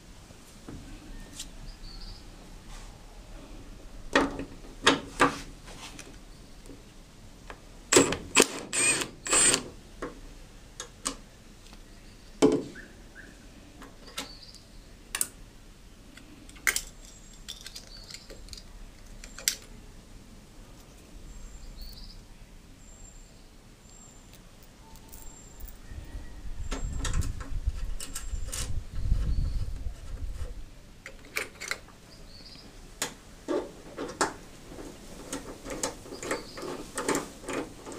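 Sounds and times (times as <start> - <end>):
metal tools and bolts clinking: 16.6 - 19.5, 24.8 - 25.8
low rumbling handling noise: 24.9 - 30.8.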